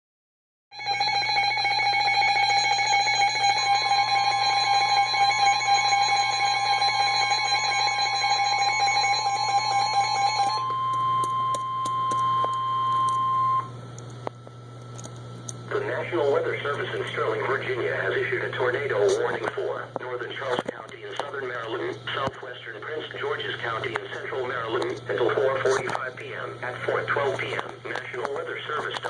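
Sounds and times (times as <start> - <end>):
steady warning tone: 0.7 - 29.0
rapid pulsing alert alarm: 0.8 - 13.7.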